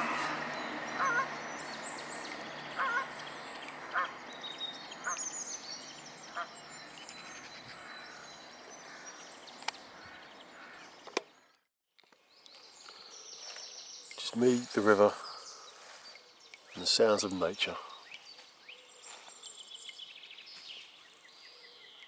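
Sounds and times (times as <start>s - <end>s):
geese honking: 0.0s - 1.6s, 2.4s - 4.4s, 6.2s - 6.6s
small birds chirping: 0.0s - 22.0s.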